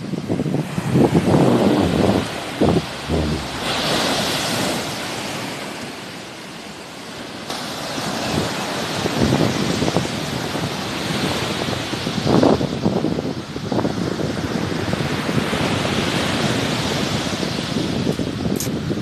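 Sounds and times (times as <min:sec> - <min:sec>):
wind buffeting microphone: 0:00.1 - 0:05.0.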